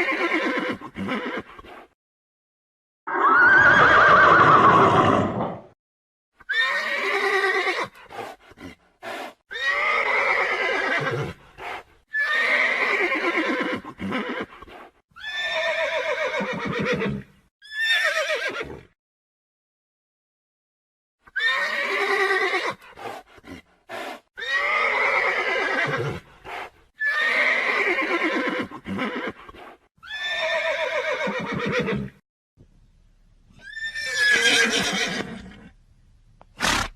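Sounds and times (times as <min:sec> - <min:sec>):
horse neighing: 0:00.0 - 0:01.8, 0:03.1 - 0:05.7, 0:09.5 - 0:11.4, 0:12.1 - 0:18.9, 0:21.3 - 0:22.8, 0:24.4 - 0:26.2, 0:27.0 - 0:32.2, 0:33.6 - 0:35.7.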